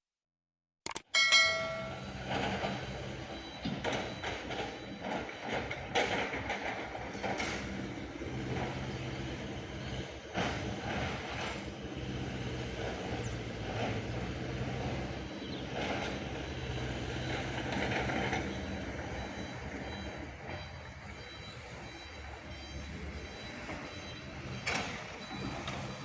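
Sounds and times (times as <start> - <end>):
faint high beeping: 1.1 - 2.2
excavator diesel engine running: 1.2 - 26.0.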